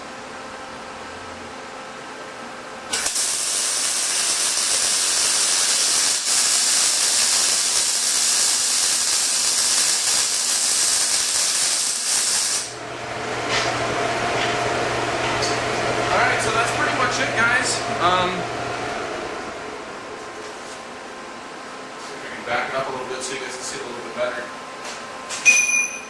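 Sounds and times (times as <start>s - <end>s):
welding arc crackling hiss: 2.9s - 12.8s.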